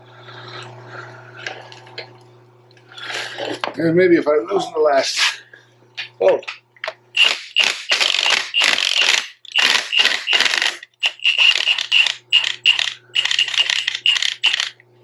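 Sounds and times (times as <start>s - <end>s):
ratchet wrench clicking: 7.2s - 14.8s.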